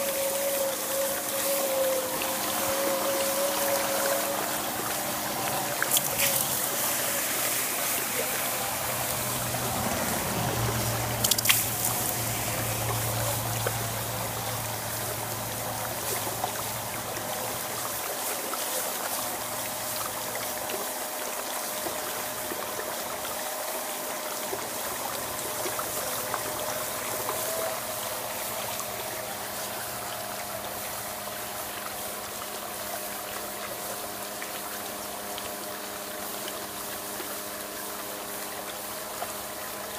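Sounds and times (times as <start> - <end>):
water trickling over hot metal: 0.0 - 39.9.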